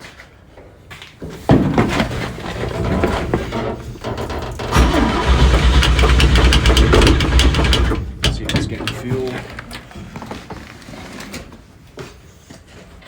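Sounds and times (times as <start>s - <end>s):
engine cranking by starter: 2.1s - 10.0s.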